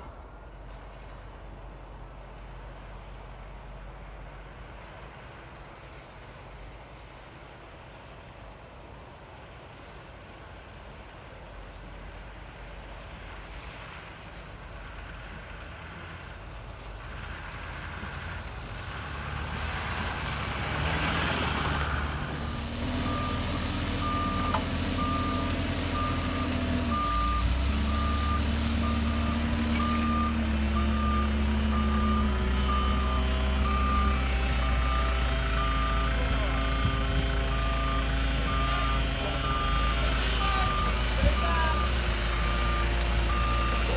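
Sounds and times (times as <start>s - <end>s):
fire truck engine running: 16.1s - 43.9s
reversing alarm beeping: 22.2s - 34.2s, 36.8s - 43.9s.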